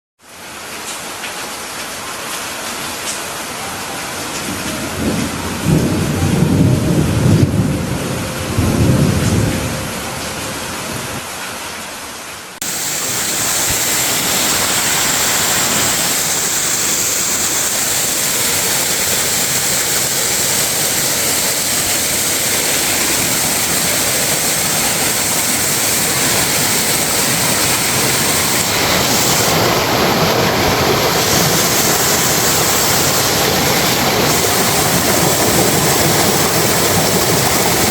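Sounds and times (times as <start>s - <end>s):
waterfall rushing: 12.6s - 37.9s.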